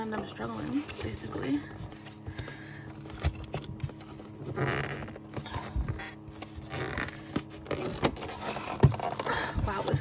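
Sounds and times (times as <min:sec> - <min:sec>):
sticky tape rasping: 0:03.1 - 0:10.0.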